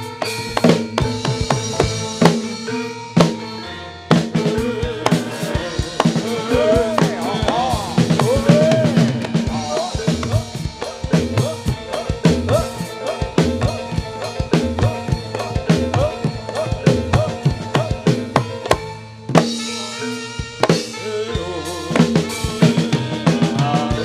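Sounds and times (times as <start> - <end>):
drums beating busy rhythm: 0.0 - 24.0
ringing metallophone tones: 0.0 - 24.0.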